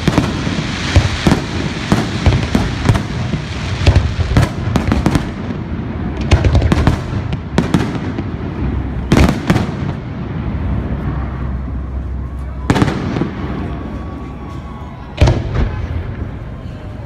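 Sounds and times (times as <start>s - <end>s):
continuous low rumble: 0.0s - 17.0s
firework bursts and bangs: 0.0s - 17.0s.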